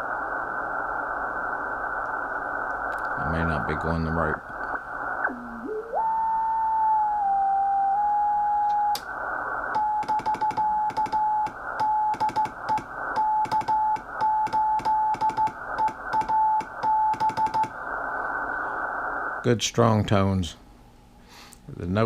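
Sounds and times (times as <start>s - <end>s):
receiver hiss: 0.0s - 22.0s
morse code beat tone: 9.8s - 17.7s.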